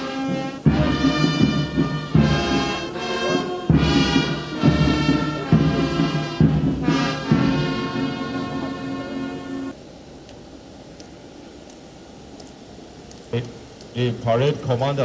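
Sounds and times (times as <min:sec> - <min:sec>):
brass band chords: 0:00.0 - 0:09.8
drum beats: 0:00.2 - 0:08.8.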